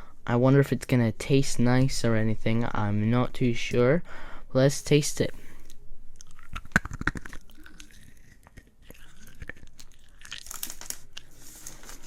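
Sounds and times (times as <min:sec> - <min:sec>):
hard sweet crunching in mouth: 0:05.5 - 0:11.6.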